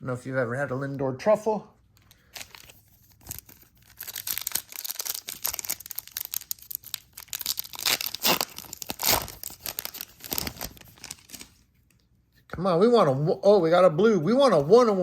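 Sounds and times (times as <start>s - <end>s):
foil wrapper crinkling and tearing: 2.2s - 11.7s.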